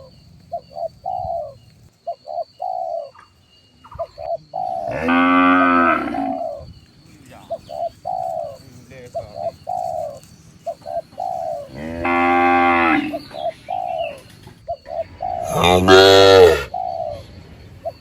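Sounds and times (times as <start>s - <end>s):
doves cooing: 0.0s - 18.0s
cattle mooing: 4.9s - 6.4s, 11.7s - 13.2s, 15.4s - 16.7s.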